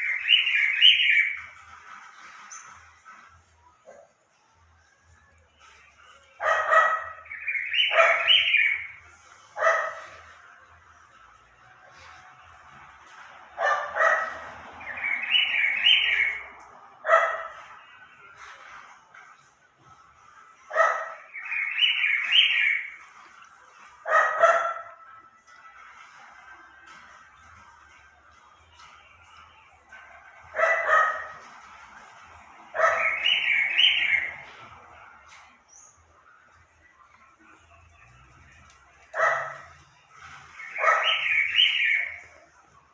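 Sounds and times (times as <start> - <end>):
high wavering chirping call: 0.0 - 1.4, 7.2 - 9.0, 14.8 - 16.5, 21.2 - 23.0, 32.8 - 34.5, 40.6 - 42.2
animal yapping: 6.4 - 8.8.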